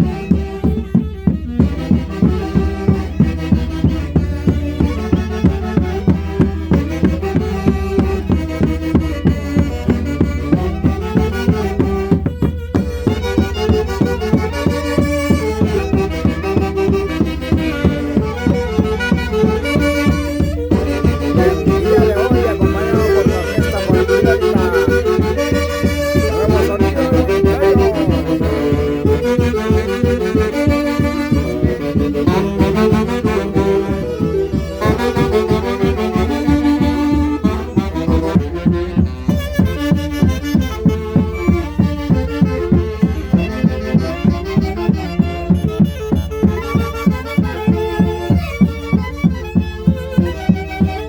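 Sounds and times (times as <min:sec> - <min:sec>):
steady drum beat: 0:00.0 - 0:39.0
wind instruments melody: 0:00.0 - 0:51.0.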